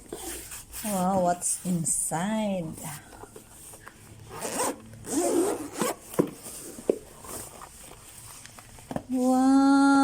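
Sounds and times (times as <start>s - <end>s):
zipper rasping open: 4.3s - 6.1s.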